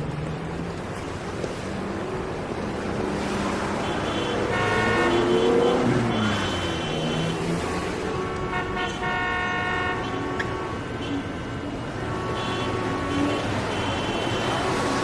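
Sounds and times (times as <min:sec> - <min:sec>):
traffic rumble: 0:00.0 - 0:15.0
car horns honking: 0:03.6 - 0:15.0.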